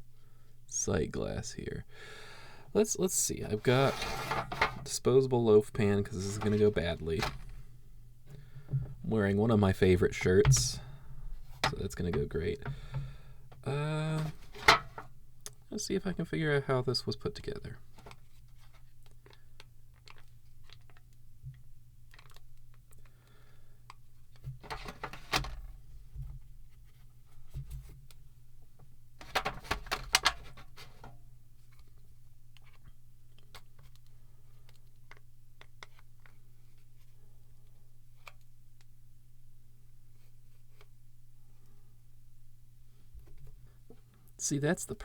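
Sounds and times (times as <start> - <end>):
low steady hum: 0.0 - 30.1
crackling clicks and scraping: 3.5 - 15.9, 29.2 - 34.1.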